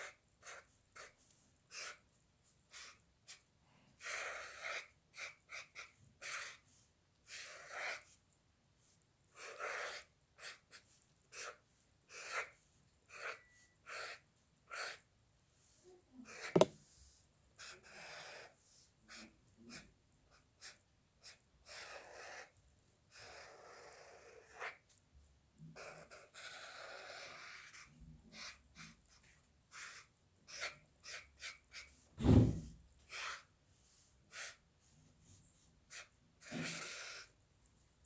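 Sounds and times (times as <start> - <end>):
pen scratching on drawing surface: 0.0 - 2.0, 7.3 - 8.2, 9.4 - 15.0, 16.3 - 16.8
sharp tap: 16.6 - 16.8.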